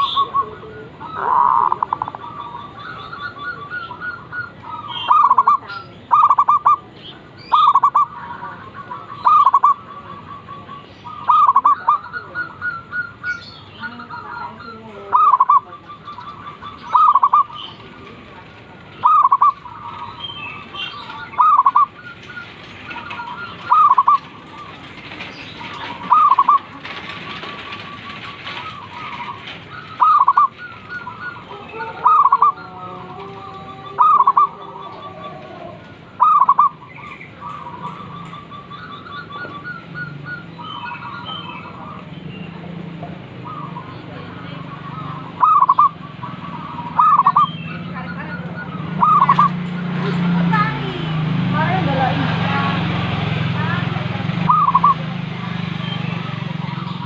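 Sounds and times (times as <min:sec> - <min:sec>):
doves cooing: 0:00.0 - 0:57.0.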